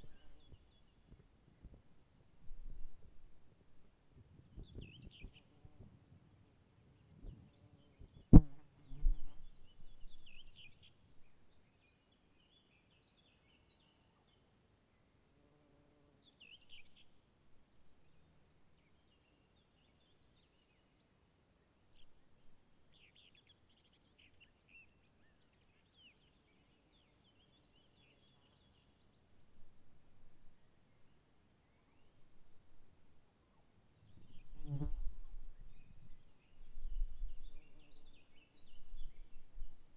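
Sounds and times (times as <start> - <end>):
insect trill: 0.0 - 39.9
sharp knock: 8.4 - 9.2.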